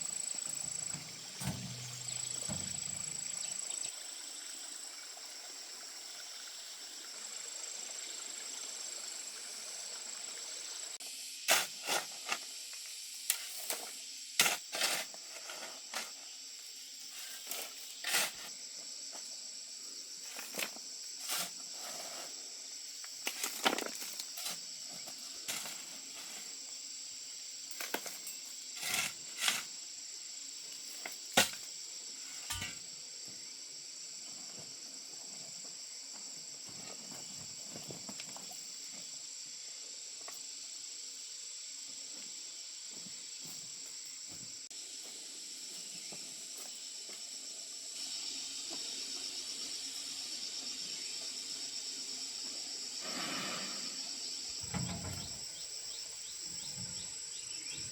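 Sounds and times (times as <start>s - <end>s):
sharp knocks and clatters: 54.6s - 55.5s.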